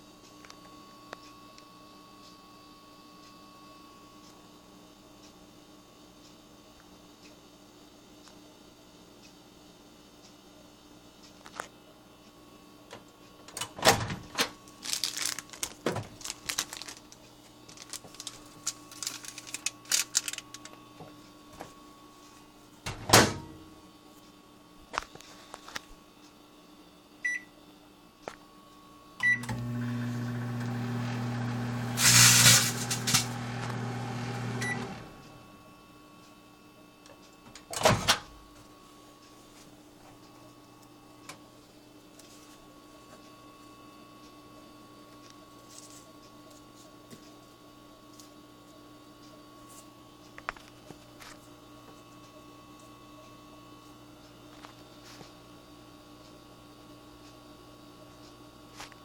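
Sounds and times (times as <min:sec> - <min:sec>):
microwave humming: 0:10.4 - 0:59.0
chip bag crinkling: 0:14.6 - 0:20.8, 0:32.0 - 0:33.4
foil bag crackling and sparking: 0:14.7 - 0:20.7, 0:32.0 - 0:33.4
microwave keypad beeps: 0:27.2 - 0:27.6, 0:29.2 - 0:29.6, 0:34.6 - 0:35.0.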